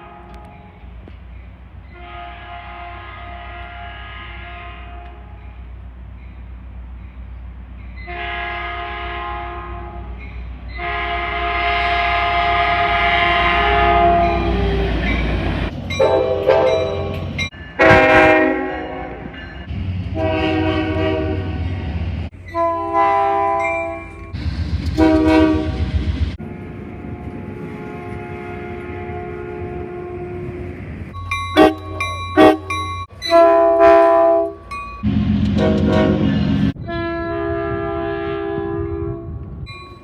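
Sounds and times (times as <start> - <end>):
train horn blasts: 0.0 - 0.7, 1.9 - 5.4, 8.0 - 10.2, 10.8 - 14.9, 16.0 - 17.2, 17.8 - 19.4, 20.2 - 21.8, 22.5 - 24.2, 25.0 - 30.7, 31.6 - 34.6, 35.5 - 39.5.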